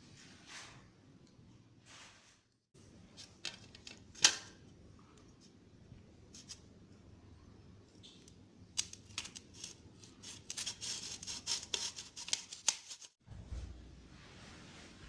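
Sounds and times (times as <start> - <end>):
knife scraping potatoes: 9.2 - 13.2.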